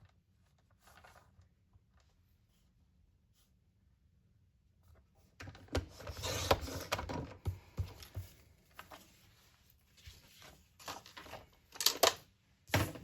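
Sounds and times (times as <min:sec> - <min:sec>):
paper rustling: 0:00.0 - 0:02.8, 0:07.8 - 0:13.0.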